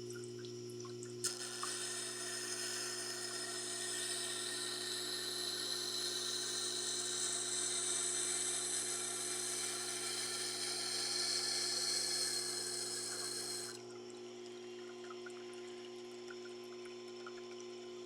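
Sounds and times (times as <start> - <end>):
sharpener motor humming: 1.2 - 13.8
knife blade grinding hiss: 1.3 - 13.8.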